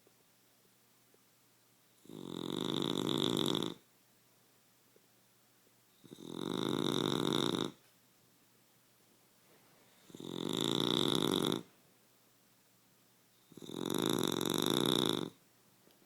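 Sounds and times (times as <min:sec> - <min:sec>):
whistling snores: 0:02.0 - 0:03.8, 0:06.0 - 0:07.8, 0:10.1 - 0:11.7, 0:13.4 - 0:15.4.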